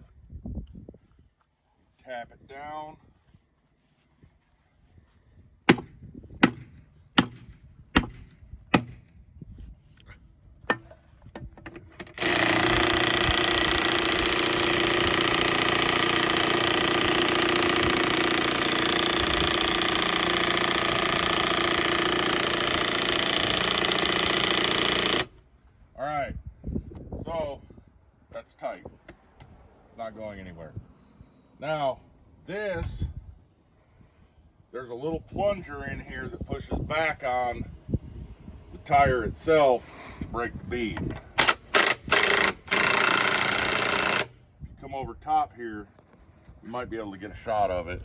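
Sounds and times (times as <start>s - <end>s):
impact wrench running: 11.6s - 25.4s, 41.3s - 44.4s.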